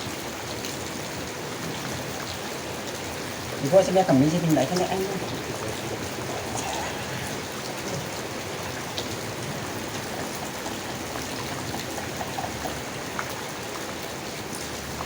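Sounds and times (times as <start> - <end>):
rain falling on leaves: 0.0 - 15.0.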